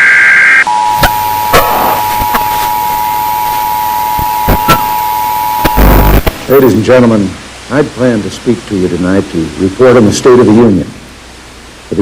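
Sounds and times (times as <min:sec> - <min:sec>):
broadcast static hiss: 0:00.0 - 0:12.0
two-tone attention signal: 0:00.6 - 0:06.2
sharp clicks and crackles: 0:04.2 - 0:06.4.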